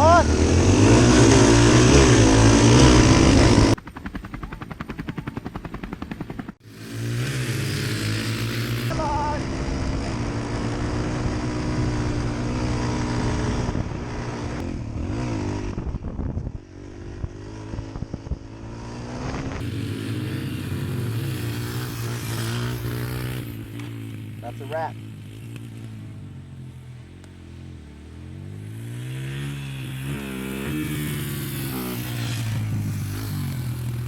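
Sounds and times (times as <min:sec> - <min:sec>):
dirt bike engines revving: 0:00.0 - 0:04.0, 0:04.8 - 0:34.0.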